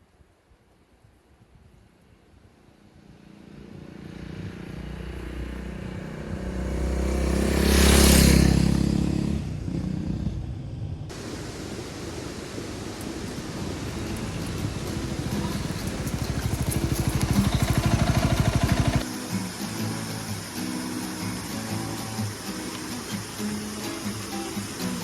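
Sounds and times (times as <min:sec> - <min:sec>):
engine and road noise: 0:02.0 - 0:25.0
motorcycle passing by: 0:02.6 - 0:11.2, 0:12.5 - 0:21.5.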